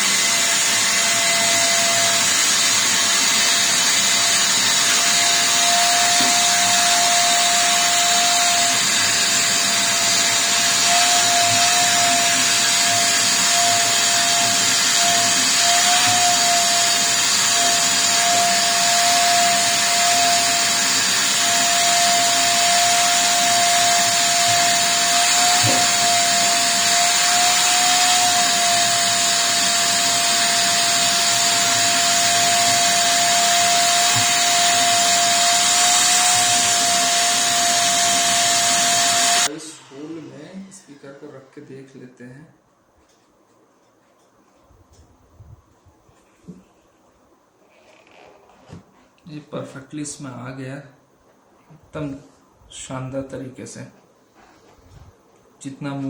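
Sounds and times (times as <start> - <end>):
electric motor whining: 0.0 - 41.3.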